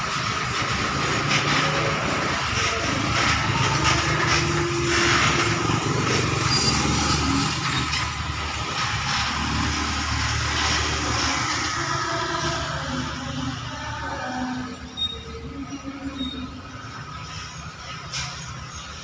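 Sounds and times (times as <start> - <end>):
bus engine rumbling: 0.0 - 19.0.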